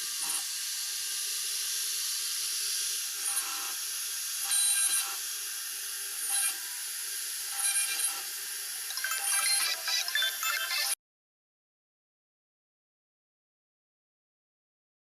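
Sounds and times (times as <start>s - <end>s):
router bit whine: 0.0s - 10.0s
router spindle cutting hiss: 0.0s - 10.1s.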